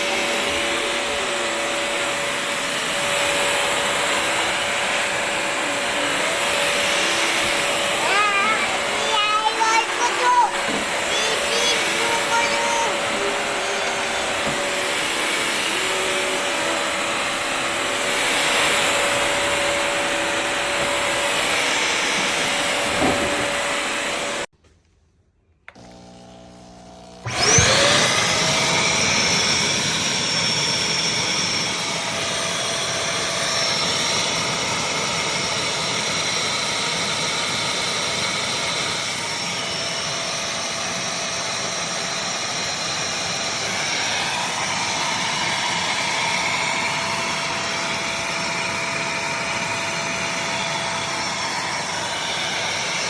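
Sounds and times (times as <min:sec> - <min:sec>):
vacuum motor running: 0:00.0 - 0:24.5, 0:25.7 - 0:53.0.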